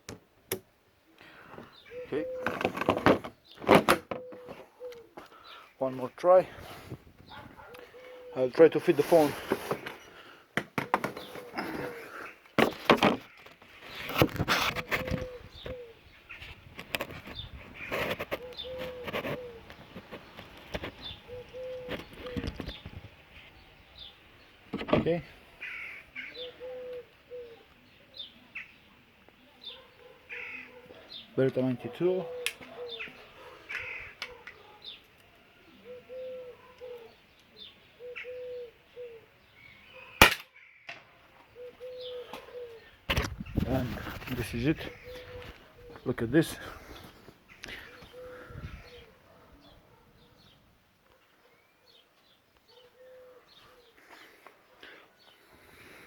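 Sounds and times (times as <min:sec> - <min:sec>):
bird cooing: 0:01.6 - 0:05.6, 0:07.3 - 0:09.3, 0:10.8 - 0:12.4, 0:14.7 - 0:16.4, 0:17.3 - 0:23.2, 0:25.6 - 0:40.2, 0:41.1 - 0:43.3, 0:44.0 - 0:46.1, 0:46.8 - 0:50.6, 0:52.7 - 0:56.0
airsoft pistol shot: 0:40.2 - 0:40.5.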